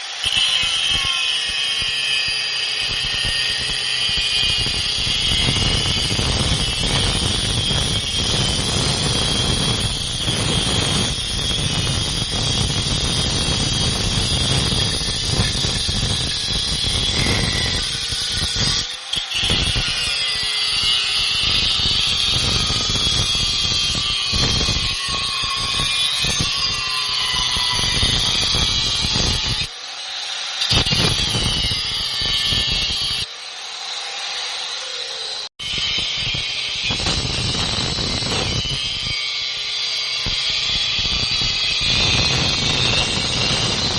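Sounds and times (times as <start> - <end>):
power tool cutting steel: 0.0 - 43.9.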